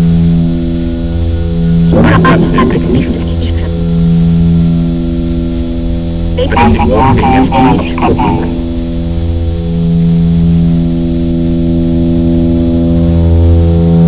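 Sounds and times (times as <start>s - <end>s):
low electronic hum: 0.0s - 13.2s
warbling voice-like sound: 1.9s - 3.8s, 6.4s - 8.6s.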